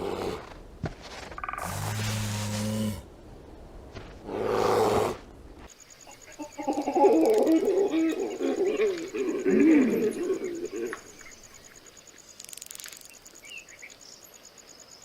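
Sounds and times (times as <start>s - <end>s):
warbling animal calls: 1.3s - 3.0s, 6.1s - 11.3s.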